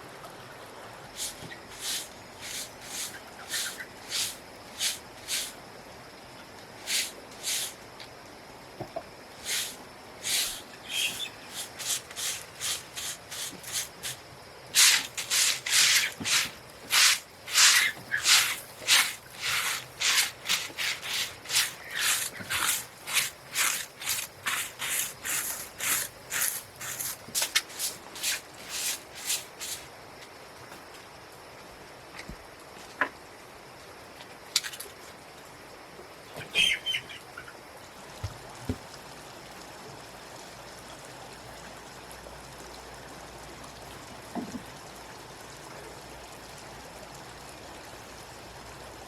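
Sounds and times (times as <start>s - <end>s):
scraping strokes: 1.2s - 5.6s, 9.4s - 29.9s.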